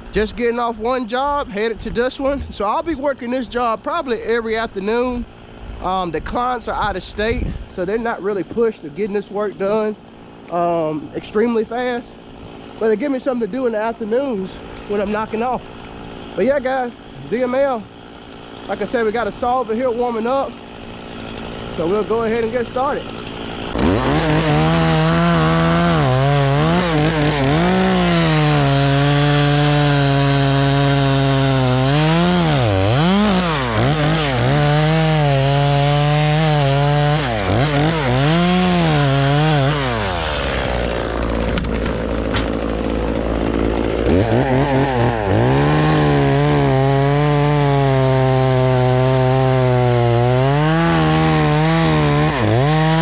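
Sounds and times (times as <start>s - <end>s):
chainsaw cutting wood: 0.0s - 53.0s.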